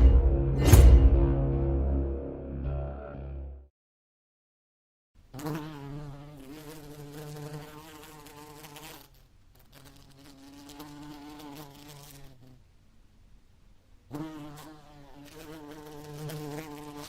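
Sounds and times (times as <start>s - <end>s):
fly buzzing: 5.2s - 12.6s, 14.1s - 17.0s.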